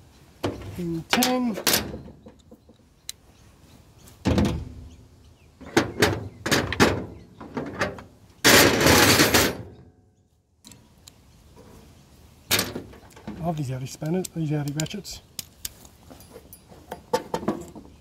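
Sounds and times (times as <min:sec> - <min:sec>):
metal tools knocking and clunking: 0:00.4 - 0:02.8, 0:05.6 - 0:09.8, 0:12.5 - 0:15.5, 0:16.1 - 0:18.0
rattling metal clatter: 0:05.6 - 0:09.8.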